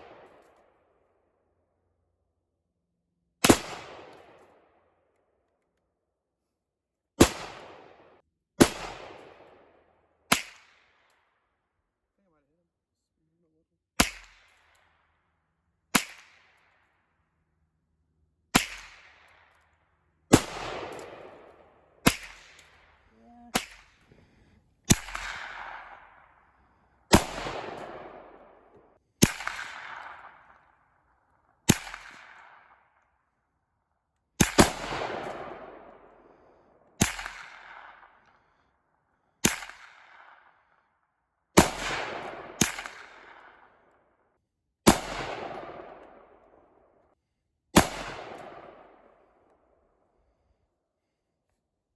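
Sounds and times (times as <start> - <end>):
rifle shots with echo: 0.0 - 0.9, 3.4 - 5.0, 7.2 - 11.4, 14.0 - 15.2, 15.9 - 17.3, 18.5 - 30.9, 31.6 - 33.0, 34.4 - 38.4, 39.4 - 40.8, 41.6 - 43.9, 44.8 - 46.9, 47.8 - 49.9.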